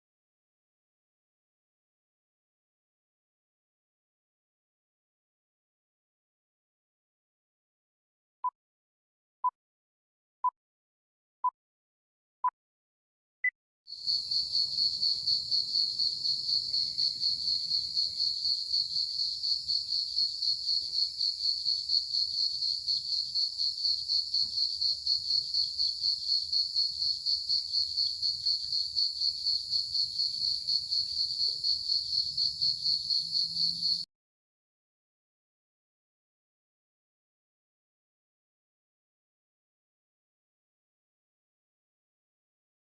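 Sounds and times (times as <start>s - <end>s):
crickets chirping: 13.9s - 34.0s.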